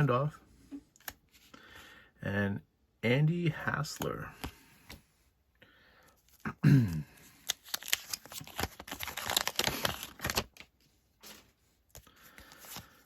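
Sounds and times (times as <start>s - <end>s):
cards flipped by hand: 7.4s - 13.0s.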